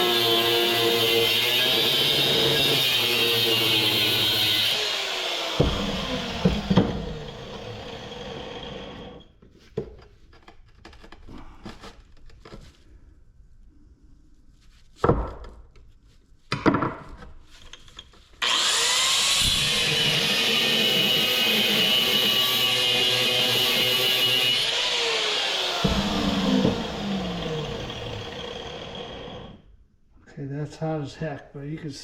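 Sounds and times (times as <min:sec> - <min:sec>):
loud power tool: 0:00.0 - 0:09.2, 0:18.4 - 0:29.6
metal scraping and knocking: 0:25.8 - 0:28.6.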